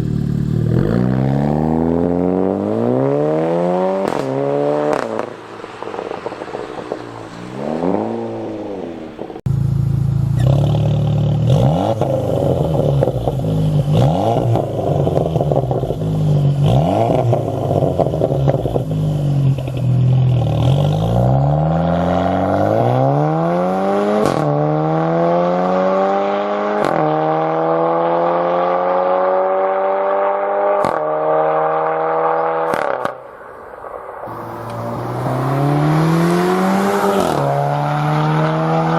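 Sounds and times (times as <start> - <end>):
car engine revving: 0.0 - 38.9
car accelerating through gears: 0.7 - 9.4, 10.4 - 33.2, 34.3 - 38.9.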